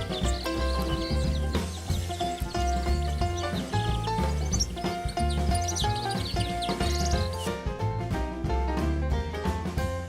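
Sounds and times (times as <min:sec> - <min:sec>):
small birds chirping: 0:00.0 - 0:07.6
background music with bass line: 0:00.0 - 0:10.0.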